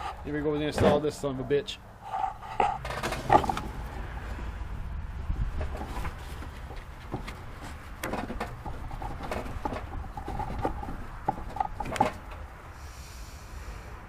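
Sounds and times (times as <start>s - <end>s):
steady low rumble: 1.8s - 14.0s
tools and parts clicking and knocking: 2.6s - 3.7s, 5.6s - 12.5s.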